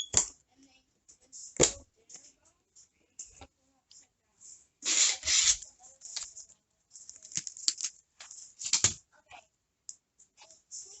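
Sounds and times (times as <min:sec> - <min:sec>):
packaging rustling and scraping: 0:07.0 - 0:09.0.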